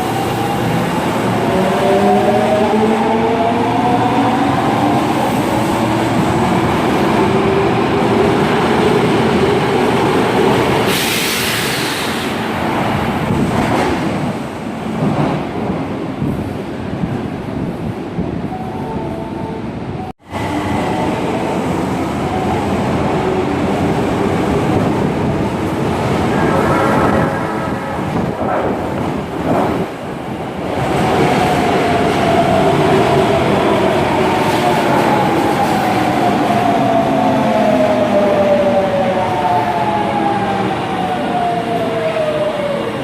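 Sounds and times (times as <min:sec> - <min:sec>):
train running noise: 0:10.3 - 0:33.5.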